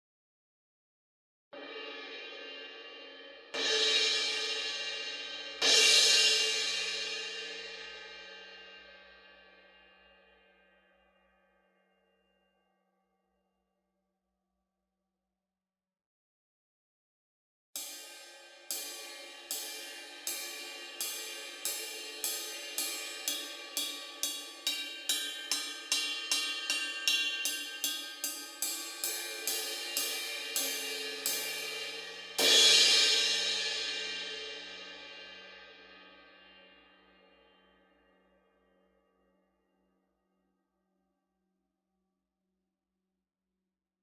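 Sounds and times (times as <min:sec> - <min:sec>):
cymbal struck with drumstick: 0:17.8 - 0:35.5.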